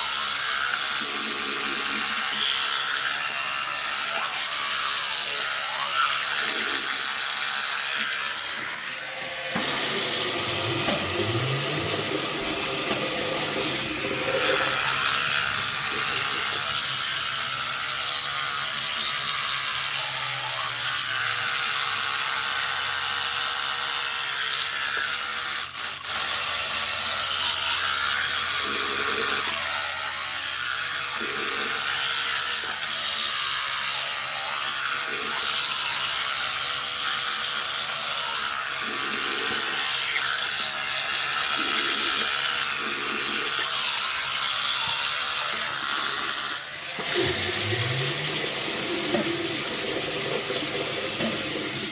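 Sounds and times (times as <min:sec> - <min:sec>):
electric toothbrush buzzing: 0:00.0 - 0:51.9.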